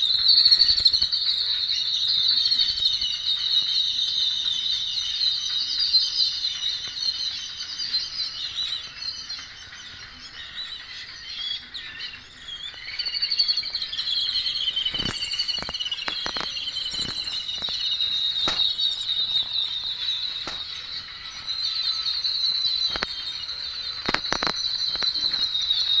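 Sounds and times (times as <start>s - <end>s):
birds chattering: 0.0s - 26.0s
sharp clicks: 12.7s - 21.0s, 22.8s - 25.5s.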